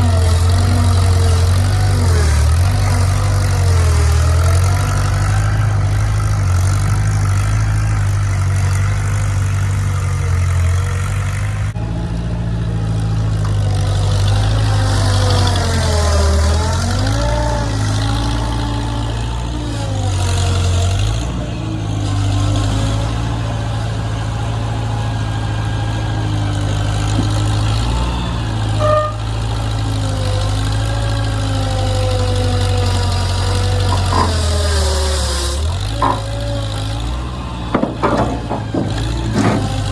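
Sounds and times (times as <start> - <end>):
engine running with whine: 0.0 - 39.9
short knocks: 37.7 - 39.9.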